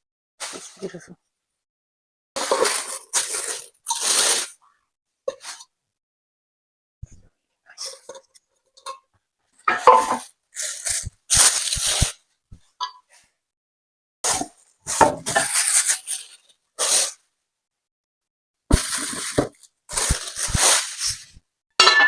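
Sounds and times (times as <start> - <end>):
packaging rustling: 2.4 - 4.5, 15.2 - 17.2, 18.7 - 21.4.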